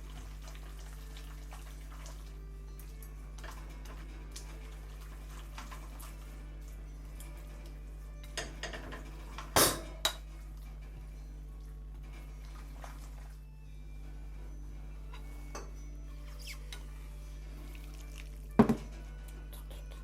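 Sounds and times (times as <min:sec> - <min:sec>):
metal utensils clinking on dishes: 0:08.2 - 0:10.8.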